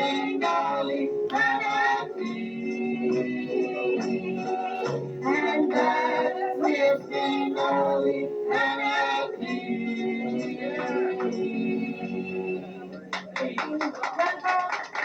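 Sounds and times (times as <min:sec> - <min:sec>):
instrumental accompaniment: 0:00.0 - 0:13.6
gospel group singing: 0:00.0 - 0:14.0.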